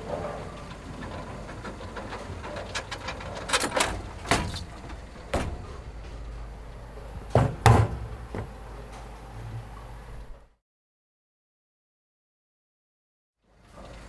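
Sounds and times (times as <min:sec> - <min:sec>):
low steady hum: 0:00.0 - 0:10.5
sharp knocks and bangs: 0:04.1 - 0:08.7.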